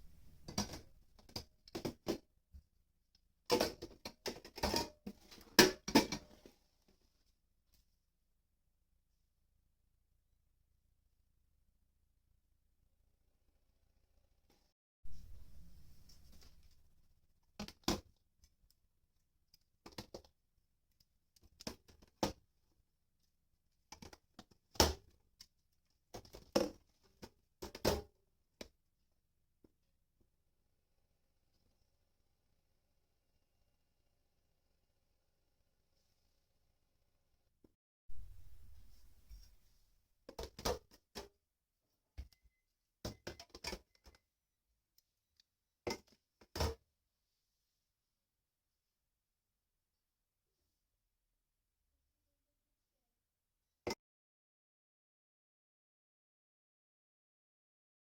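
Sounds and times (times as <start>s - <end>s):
objects handled with clicks and knocks: 0.0s - 2.2s, 23.9s - 24.6s, 42.2s - 44.2s.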